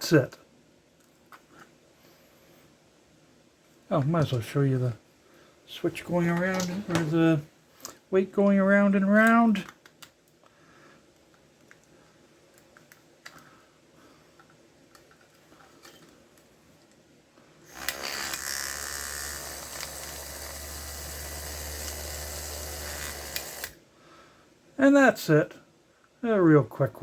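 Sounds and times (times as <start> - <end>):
light clicks of small parts: 9.2 - 13.5
vibration motor buzzing: 17.7 - 23.7.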